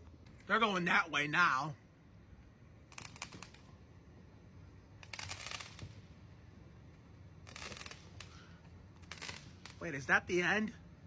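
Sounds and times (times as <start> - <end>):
distant fireworks crackling: 2.4 - 10.8.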